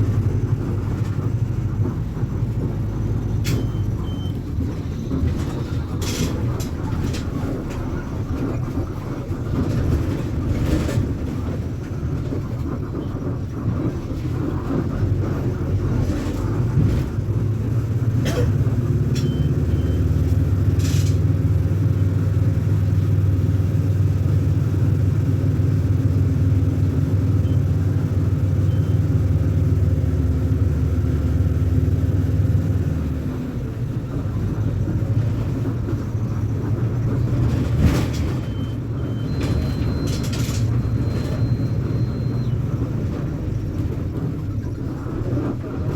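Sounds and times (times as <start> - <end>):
diesel bus engine running: 0.0 - 45.9.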